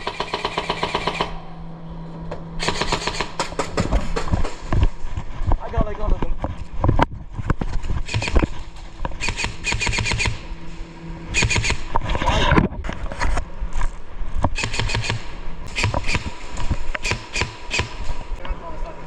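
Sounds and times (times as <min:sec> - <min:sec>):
airsoft guns firing bursts: 0:00.0 - 0:01.4, 0:02.6 - 0:04.3, 0:08.1 - 0:08.5, 0:09.2 - 0:10.5, 0:11.3 - 0:11.9, 0:14.6 - 0:16.4, 0:17.0 - 0:18.2.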